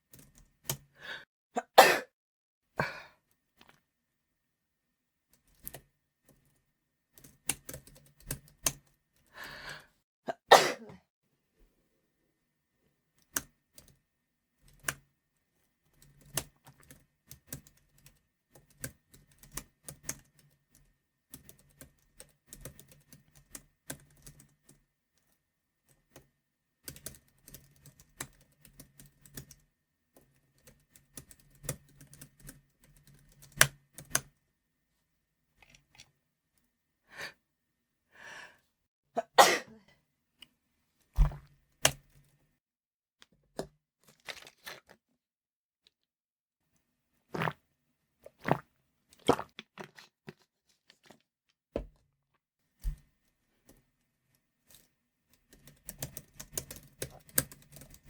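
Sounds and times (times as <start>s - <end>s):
typing on computer keyboard: 0.1s - 0.9s, 5.3s - 9.3s, 13.2s - 14.0s, 14.6s - 15.0s, 15.9s - 24.8s, 25.9s - 34.3s, 54.7s - 58.0s
person breathing: 0.9s - 1.3s, 9.3s - 10.0s, 37.1s - 37.4s, 38.1s - 38.8s
person sneezing: 1.6s - 2.1s, 10.3s - 11.0s, 39.2s - 39.9s.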